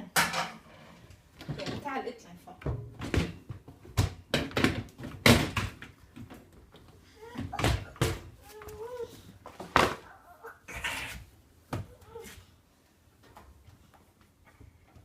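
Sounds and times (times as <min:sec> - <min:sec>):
knocks and thuds: 0:02.6 - 0:05.8.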